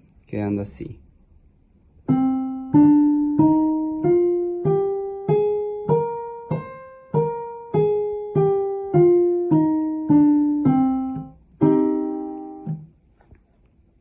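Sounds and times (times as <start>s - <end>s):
piano playing a scale: 2.1s - 12.9s.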